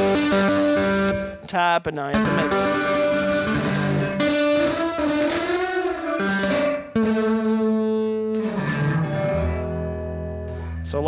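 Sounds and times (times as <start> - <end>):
distorted electric guitar chords: 0.0 - 11.0.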